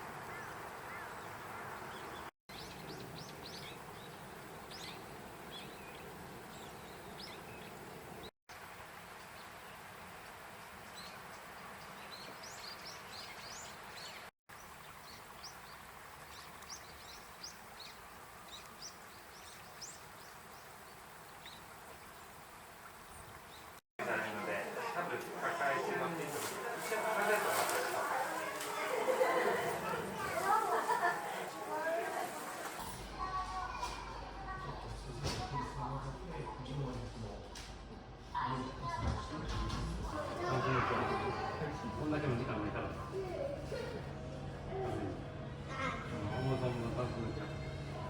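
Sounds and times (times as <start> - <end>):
small birds chirping: 0.0 - 23.8.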